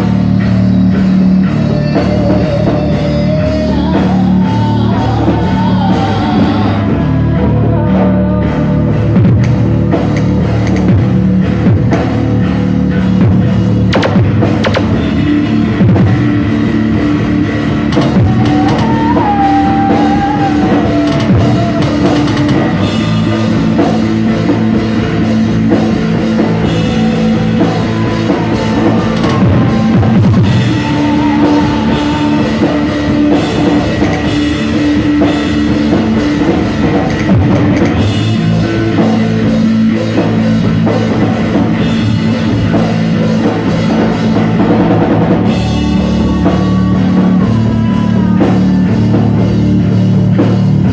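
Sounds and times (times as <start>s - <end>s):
drum kit: 0.0s - 50.9s
guitar: 0.0s - 50.9s
rock band playing: 0.0s - 50.9s.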